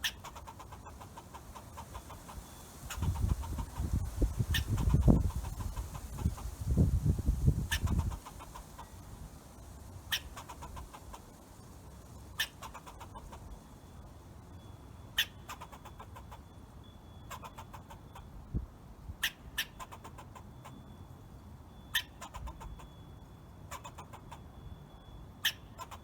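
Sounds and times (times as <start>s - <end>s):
squirrel chirping: 0.0s - 9.2s, 9.8s - 13.7s, 15.0s - 16.5s, 17.2s - 18.3s, 19.2s - 20.8s, 21.9s - 23.0s, 23.7s - 24.4s, 25.4s - 26.0s.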